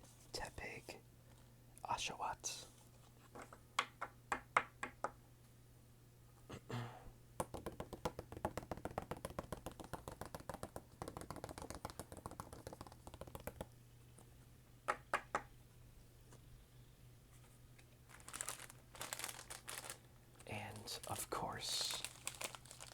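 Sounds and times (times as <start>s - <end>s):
hands tapping on trading cards: 3.4s - 5.2s, 7.4s - 13.7s, 14.9s - 15.5s.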